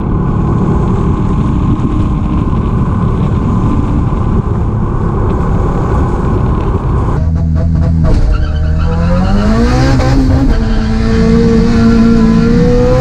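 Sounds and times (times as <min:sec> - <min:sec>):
motorcycle engine low rumble: 0:00.0 - 0:08.8.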